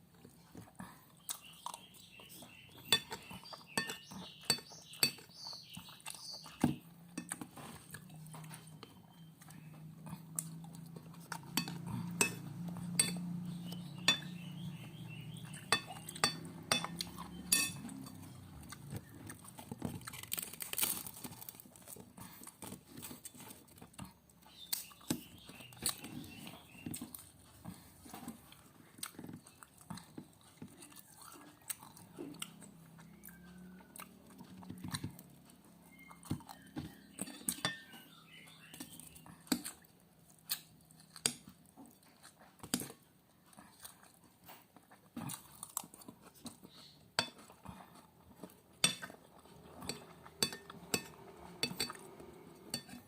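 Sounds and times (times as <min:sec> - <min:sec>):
close-up chewing: 0:00.0 - 0:53.0
cutlery clinking on plate: 0:02.8 - 0:05.4, 0:11.5 - 0:13.4, 0:14.0 - 0:14.4, 0:15.6 - 0:18.3, 0:37.2 - 0:38.0, 0:47.2 - 0:47.5, 0:48.8 - 0:49.2, 0:49.8 - 0:53.0.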